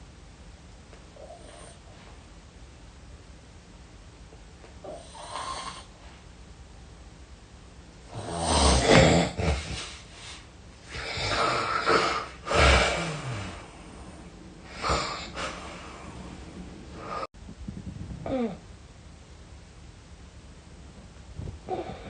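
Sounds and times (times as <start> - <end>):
person snoring heavily: 4.9 - 5.9, 8.1 - 10.0, 10.9 - 17.3.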